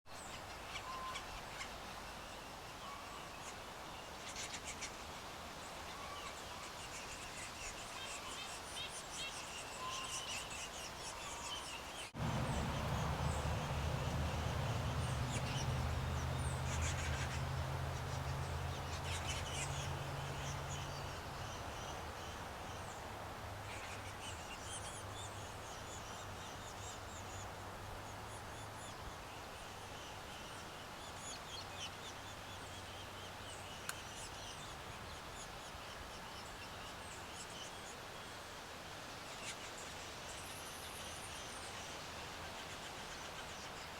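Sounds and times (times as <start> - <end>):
low droning hum: 12.2 - 22.0
nestlings begging chatter: 12.2 - 22.1.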